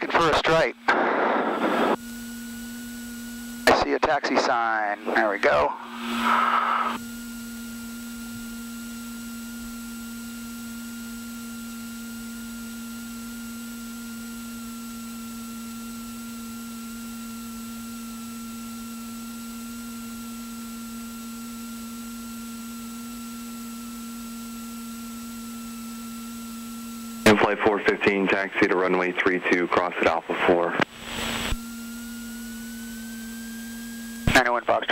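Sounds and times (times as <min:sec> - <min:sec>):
higher whines: 0:00.0 - 0:07.0, 0:30.0 - 0:34.9
electrical hum: 0:00.0 - 0:34.9.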